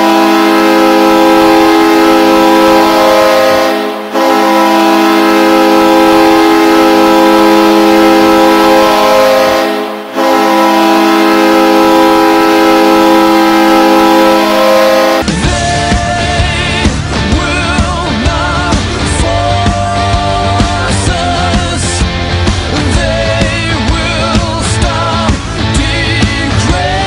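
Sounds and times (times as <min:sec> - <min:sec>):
hockey goal horn blasts: 0:00.0 - 0:15.3.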